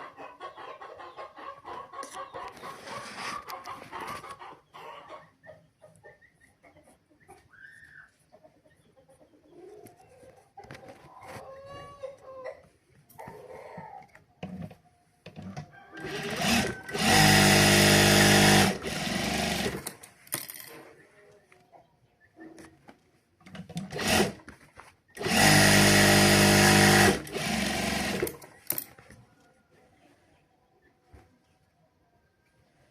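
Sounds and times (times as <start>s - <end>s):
sewing machine stitching: 15.4s - 20.0s, 23.5s - 24.6s, 25.2s - 28.6s.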